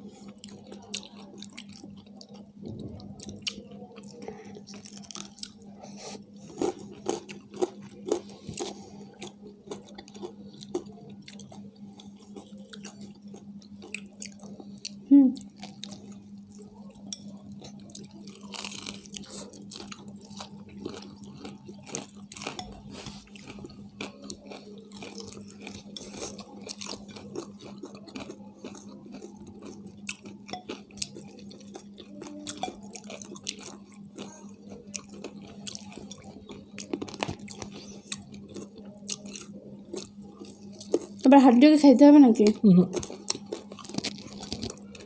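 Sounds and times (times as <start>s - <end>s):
low steady hum: 0.0s - 45.0s
chewing and biting fried chicken: 0.1s - 41.3s, 42.9s - 45.0s.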